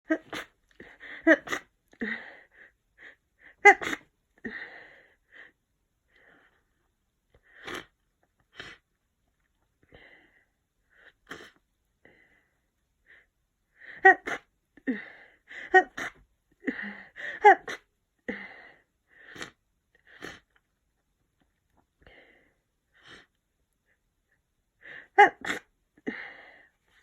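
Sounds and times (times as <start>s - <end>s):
person sneezing: 0.0s - 1.7s, 3.6s - 4.1s, 25.1s - 25.7s
sniffly breaths: 14.9s - 20.6s.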